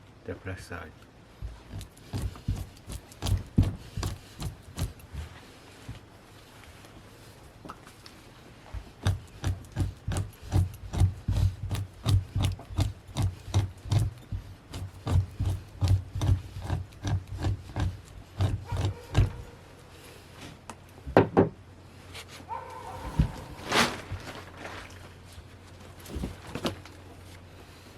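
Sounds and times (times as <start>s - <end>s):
tool scraping animal hide: 1.4s - 6.0s, 8.6s - 20.6s, 22.0s - 27.4s.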